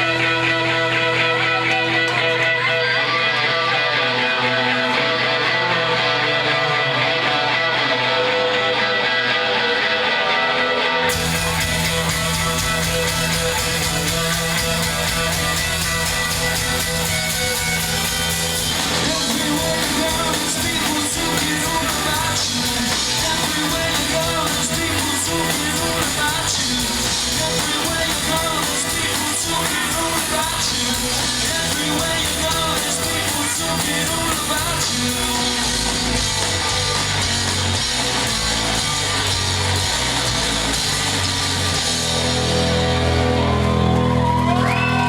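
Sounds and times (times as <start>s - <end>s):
rock band playing live: 0.0s - 45.0s
person singing: 18.8s - 36.0s.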